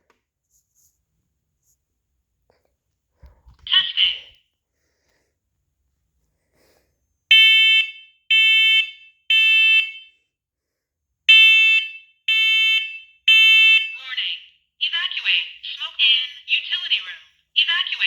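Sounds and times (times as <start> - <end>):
smoke alarm beeps: 7.3 - 10.2, 11.3 - 14.0.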